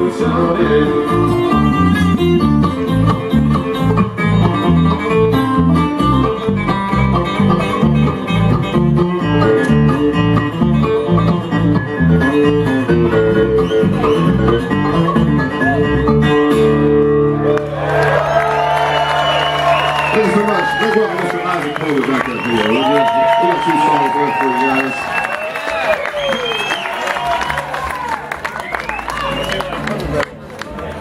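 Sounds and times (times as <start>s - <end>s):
bluegrass band playing: 0.0s - 17.7s.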